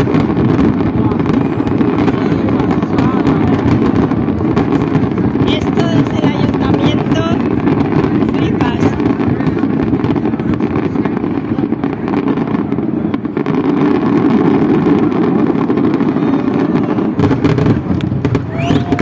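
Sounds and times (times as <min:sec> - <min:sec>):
fireworks bursting: 0:00.0 - 0:19.0
fireworks crackling: 0:00.0 - 0:19.0.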